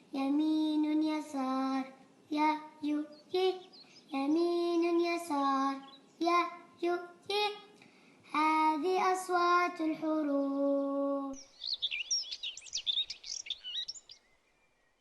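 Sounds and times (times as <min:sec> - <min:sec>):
child singing a chant: 0:00.0 - 0:11.4.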